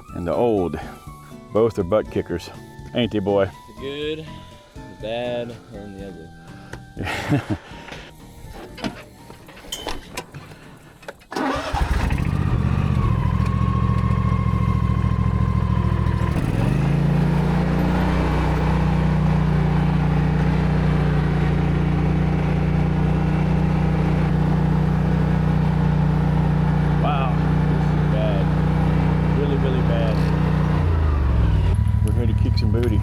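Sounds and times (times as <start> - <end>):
mower engine starting and running: 11.2 - 33.0.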